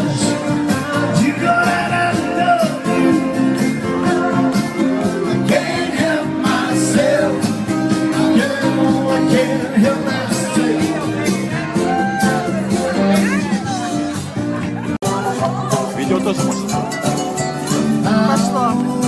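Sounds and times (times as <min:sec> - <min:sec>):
loud party music with singing: 0:00.0 - 0:19.0.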